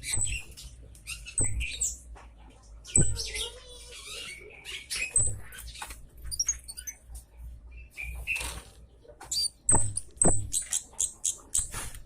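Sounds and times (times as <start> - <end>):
buzzy bird trill: 0.0 - 2.0, 2.9 - 7.0, 9.3 - 11.8.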